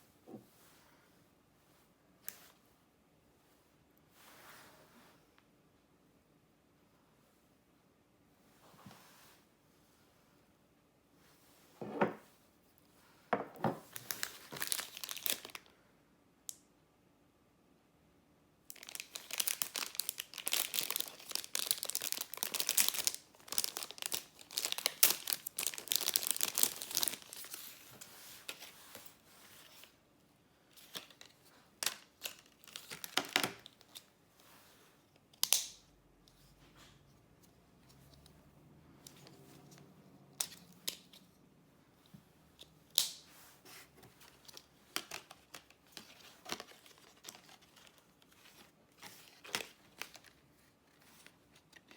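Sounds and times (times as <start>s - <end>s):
packaging torn and crinkled: 13.9s - 15.6s, 18.7s - 27.6s.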